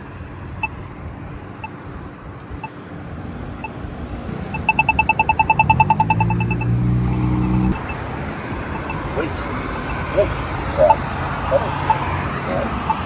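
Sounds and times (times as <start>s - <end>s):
vehicle engine: 0.0s - 13.0s
pedestrian signal button ticking: 4.3s - 6.8s, 7.4s - 13.0s.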